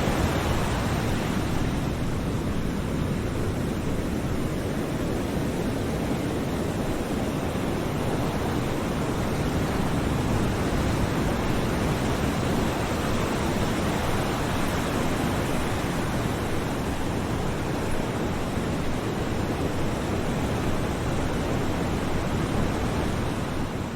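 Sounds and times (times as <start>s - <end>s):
ocean waves washing: 0.0s - 3.6s.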